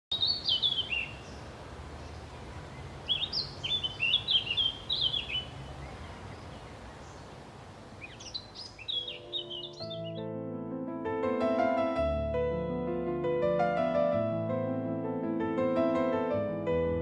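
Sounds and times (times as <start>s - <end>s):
songbird chirping: 0.1s - 10.4s.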